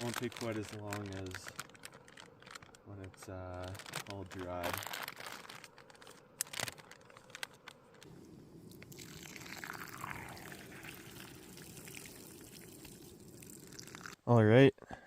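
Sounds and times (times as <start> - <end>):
water boiling in a pot: 8.1 - 14.2.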